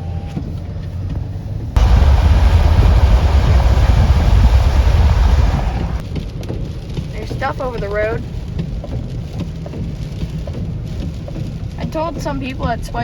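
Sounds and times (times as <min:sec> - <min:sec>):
heavy low rumble: 0:01.8 - 0:06.2
wind buffeting microphone: 0:01.8 - 0:07.8.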